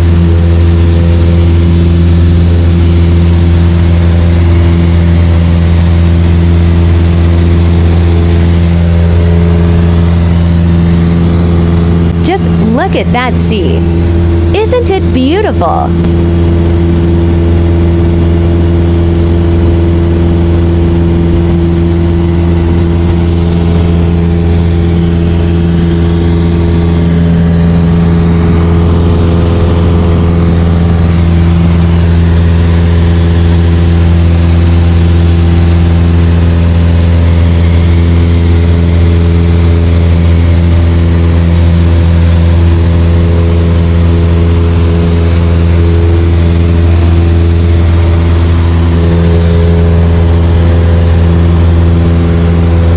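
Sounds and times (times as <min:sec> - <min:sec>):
light aircraft engine droning: 0:00.0 - 0:15.1, 0:15.9 - 0:52.9.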